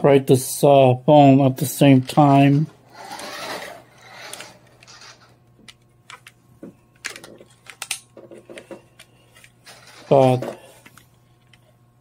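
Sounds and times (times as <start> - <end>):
toy car electric motor whirring: 2.9 - 5.4, 9.7 - 10.1.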